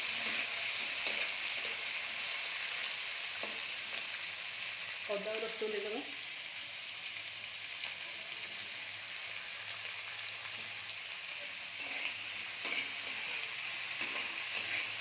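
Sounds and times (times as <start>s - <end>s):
spatula scraping a pan: 0.0s - 2.3s, 11.7s - 15.0s
food sizzling in oil: 0.0s - 15.0s.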